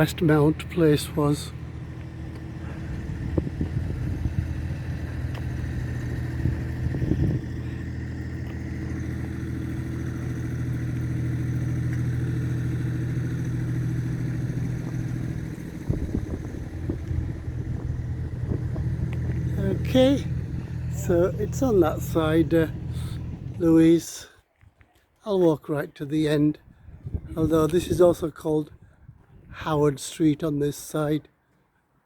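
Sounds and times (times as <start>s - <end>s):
car engine running: 0.0s - 23.8s.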